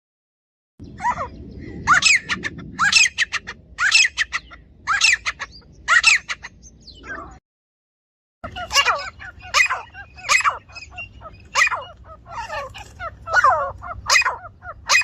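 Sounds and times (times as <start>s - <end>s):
francolin calling: 8.4s - 15.0s.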